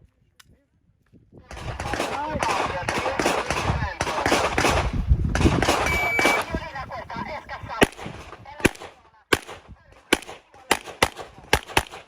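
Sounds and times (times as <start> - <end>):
handgun shots: 1.6 - 6.5, 7.8 - 12.0.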